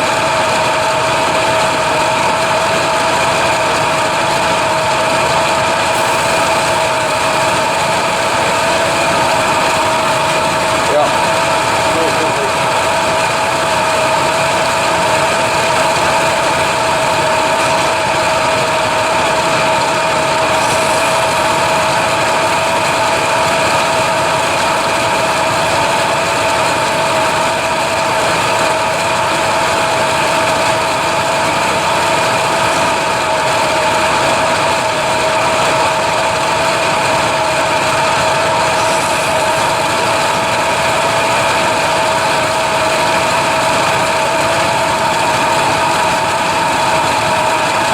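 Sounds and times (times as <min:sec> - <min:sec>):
motor running with whine: 0:00.0 - 0:47.9.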